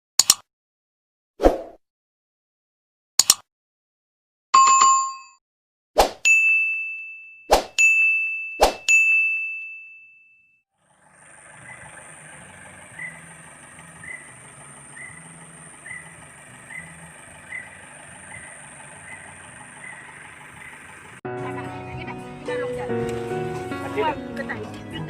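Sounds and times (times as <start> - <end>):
bell-like ding: 4.6 - 5.4, 6.3 - 10.6.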